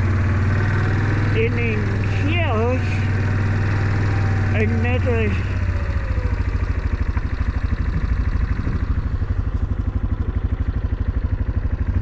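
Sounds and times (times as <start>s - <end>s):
vehicle engine pulsing rumble: 0.0s - 12.0s.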